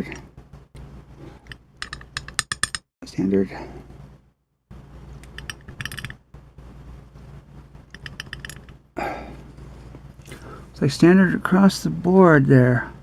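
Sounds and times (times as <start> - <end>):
lock pins clinking: 1.4 - 2.8, 5.2 - 6.2, 7.9 - 8.8.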